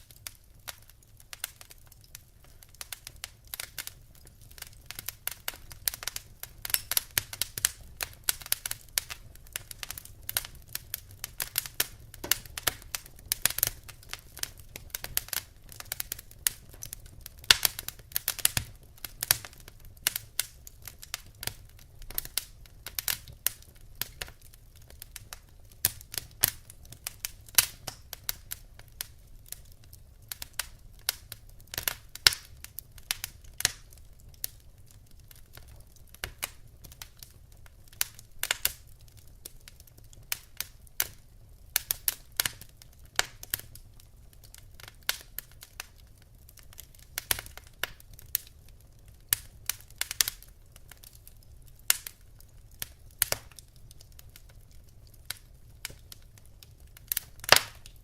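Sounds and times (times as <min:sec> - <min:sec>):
wood fire crackling: 0:00.0 - 0:58.0
sharp snaps and pops of logs: 0:04.6 - 0:16.9, 0:25.9 - 0:28.5, 0:30.3 - 0:32.5, 0:51.9 - 0:54.2, 0:57.0 - 0:58.0.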